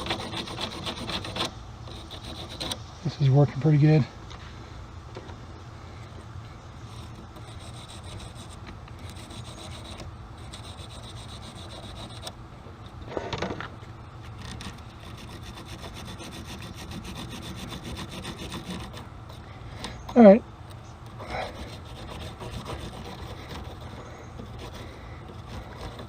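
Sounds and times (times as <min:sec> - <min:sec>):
wire brush scrubbing metal: 0:00.0 - 0:03.2, 0:06.8 - 0:12.3, 0:14.4 - 0:20.0, 0:21.2 - 0:26.0.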